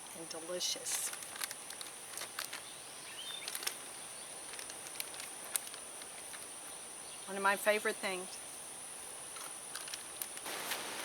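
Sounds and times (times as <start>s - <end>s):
insects droning: 0.0s - 11.0s
small clicks and crackles: 0.9s - 2.7s, 3.3s - 6.5s, 9.3s - 10.9s.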